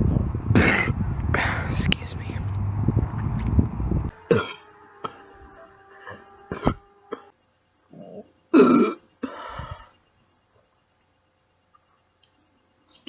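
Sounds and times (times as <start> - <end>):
woman burping: 0.5 - 1.5, 4.3 - 4.6, 6.5 - 7.3, 8.0 - 9.0.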